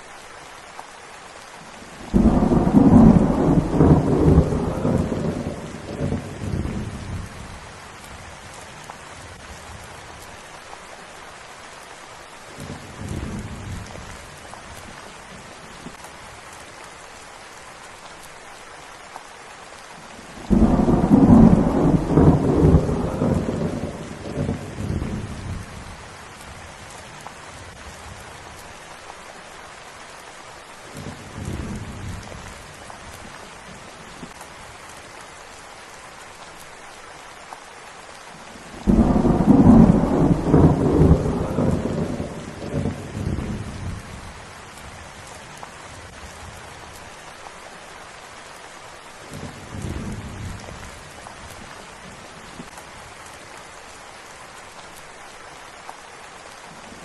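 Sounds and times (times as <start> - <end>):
steady rain falling: 0.0 - 57.0
distant thunder rumbles: 2.0 - 7.6, 20.4 - 26.0, 38.7 - 45.6
loud thunder crack: 2.1 - 6.2, 20.5 - 25.1.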